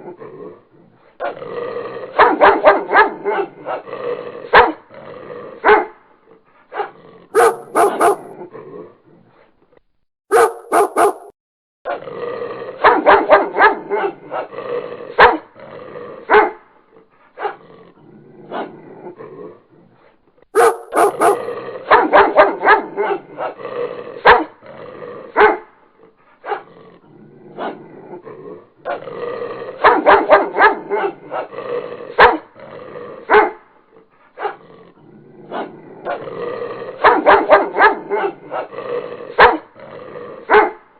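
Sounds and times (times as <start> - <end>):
dog barking: 2.2 - 3.5, 4.5 - 4.8, 5.6 - 6.0, 6.7 - 8.4, 10.3 - 11.4, 12.8 - 14.2, 15.2 - 15.5, 16.3 - 16.6, 20.6 - 23.2, 24.2 - 24.5, 25.4 - 25.7, 29.8 - 31.5, 32.2 - 32.5, 33.3 - 33.6, 37.0 - 38.6, 39.4 - 39.7, 40.5 - 40.8.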